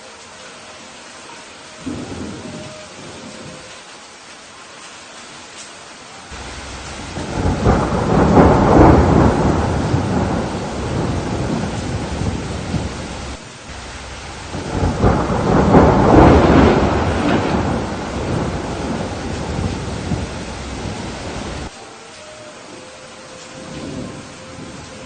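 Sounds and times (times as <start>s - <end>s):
heavy rain: 0.0s - 25.0s
thunder rumbling: 1.8s - 3.8s, 6.3s - 21.7s, 23.6s - 25.0s.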